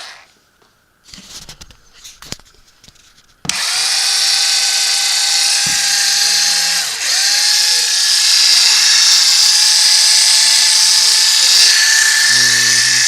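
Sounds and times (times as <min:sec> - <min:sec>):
cordless drill motor whining: 0:03.5 - 0:13.0
drill clicks: 0:03.5 - 0:13.0.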